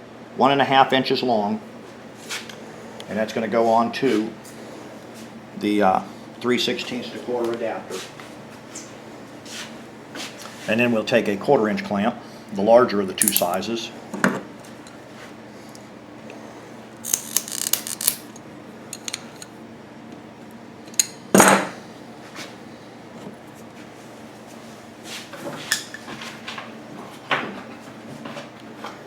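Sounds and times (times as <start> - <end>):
small parts clicking and clattering: 13.2 - 13.6, 17.0 - 19.5, 20.9 - 21.2.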